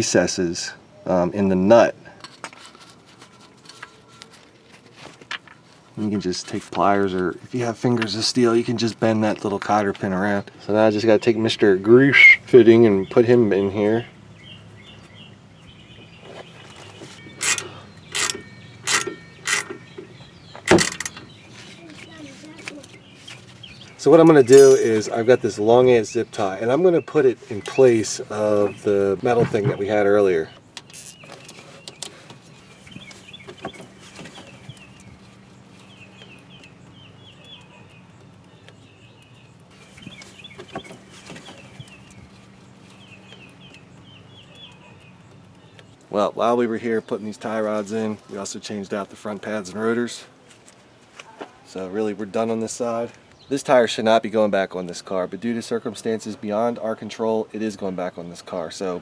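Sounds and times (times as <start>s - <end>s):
birds chirping: 3.2s - 59.0s
ratchet wrench clicking: 17.3s - 19.9s, 30.9s - 31.2s.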